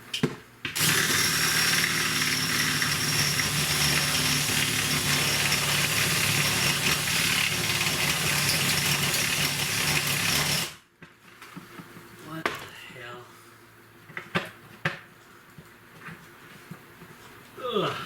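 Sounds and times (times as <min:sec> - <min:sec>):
power tool motor cutting plastic: 0:00.8 - 0:10.8.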